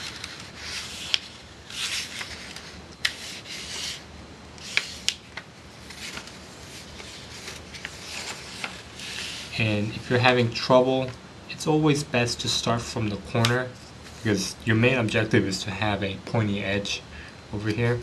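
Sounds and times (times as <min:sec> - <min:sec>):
paper crackles: 0:00.0 - 0:04.0, 0:04.6 - 0:10.2
paper rustling swishes: 0:00.0 - 0:04.0, 0:04.6 - 0:10.4.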